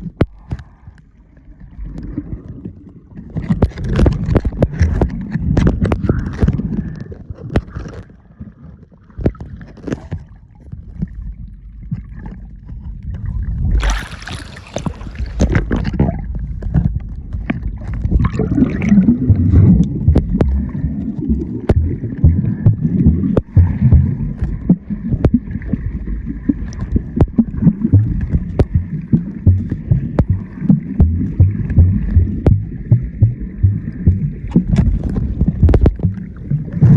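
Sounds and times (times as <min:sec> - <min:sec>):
muffled water sloshing: 0:07.5 - 0:36.9
low thuds: 0:19.0 - 0:25.5, 0:27.2 - 0:36.9.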